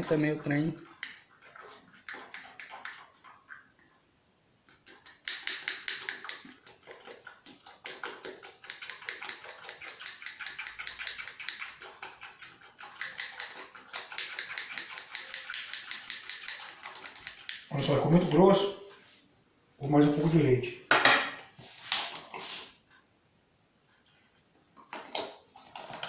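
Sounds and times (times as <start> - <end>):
spoon stirring batter in a cup: 0.0 - 3.7, 4.7 - 18.7.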